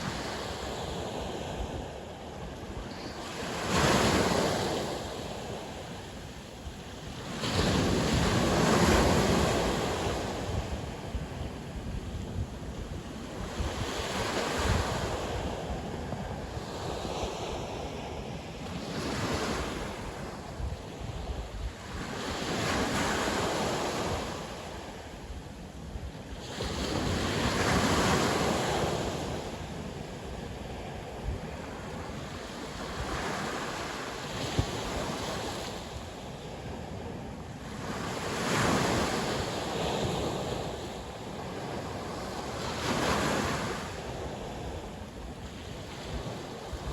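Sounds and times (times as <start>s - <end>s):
sea waves breaking on shore: 0.0s - 46.9s
wind rumbling on microphone: 0.0s - 46.9s.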